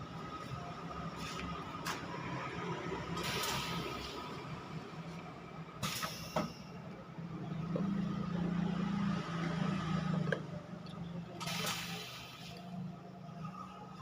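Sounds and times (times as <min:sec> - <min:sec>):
released air hiss: 0:05.8 - 0:06.5, 0:11.4 - 0:12.7.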